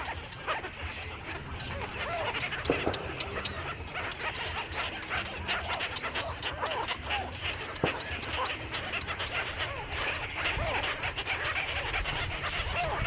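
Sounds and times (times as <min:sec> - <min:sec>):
small birds chirping: 0:00.0 - 0:13.0
steady low hum: 0:00.0 - 0:13.0.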